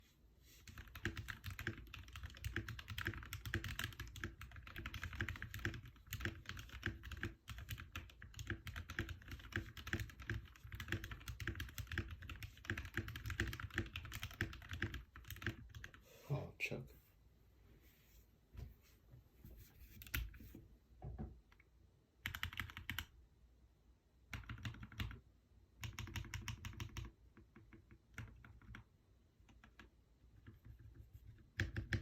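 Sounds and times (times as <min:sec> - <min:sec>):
fast mechanical keyboard typing: 0:00.7 - 0:16.0, 0:22.2 - 0:23.1, 0:24.3 - 0:25.2, 0:25.8 - 0:28.9, 0:29.5 - 0:32.0.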